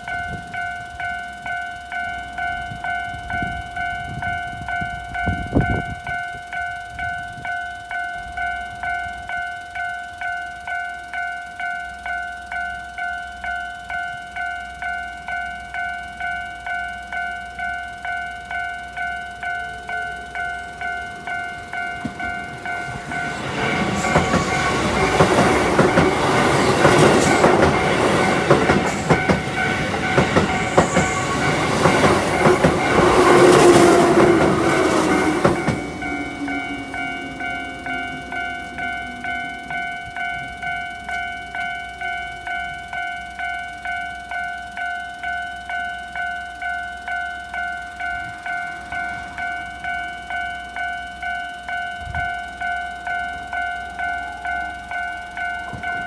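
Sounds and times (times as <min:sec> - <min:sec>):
level crossing alarm ringing: 0:00.0 - 0:56.0
train motor hum: 0:19.2 - 0:41.7
train wheels clattering: 0:19.6 - 0:41.8.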